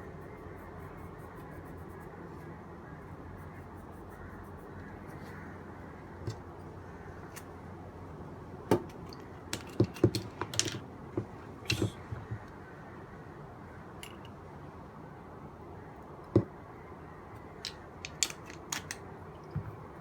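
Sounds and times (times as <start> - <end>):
steady low background noise: 0.0 - 20.0
light clicks and taps of small parts: 8.8 - 12.6, 17.6 - 19.7.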